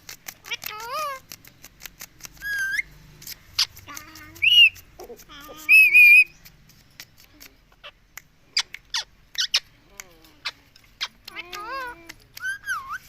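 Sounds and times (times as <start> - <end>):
parakeet clicks: 0.0 - 13.0
parakeet whistled calls: 2.4 - 2.9, 4.4 - 4.8, 5.7 - 6.4, 12.4 - 13.0.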